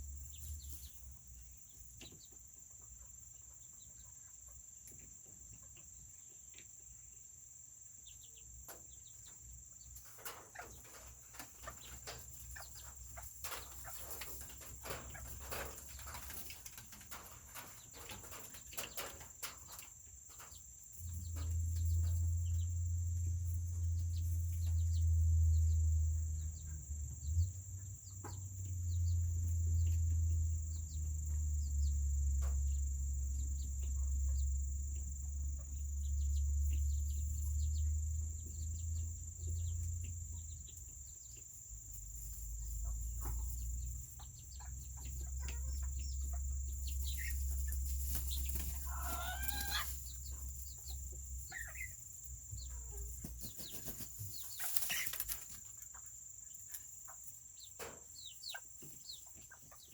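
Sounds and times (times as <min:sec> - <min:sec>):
small rooster crowing: 0:48.8 - 0:49.9.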